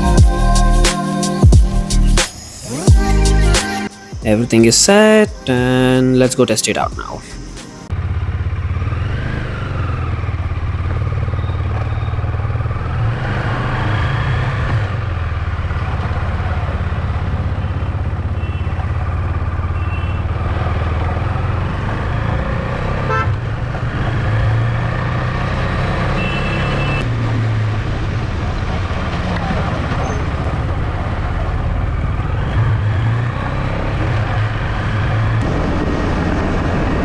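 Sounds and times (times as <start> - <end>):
motorcycle engine running: 7.4 - 37.0
vehicle horn beeps: 18.3 - 18.9, 19.7 - 20.3, 23.0 - 23.4, 26.1 - 27.0.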